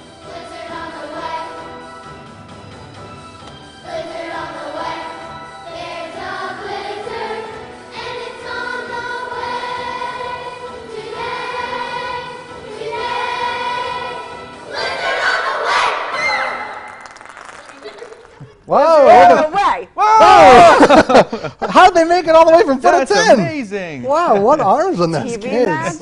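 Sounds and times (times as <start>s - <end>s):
children's choir singing: 0.0s - 2.2s, 3.8s - 16.9s
musical accompaniment: 0.0s - 18.3s.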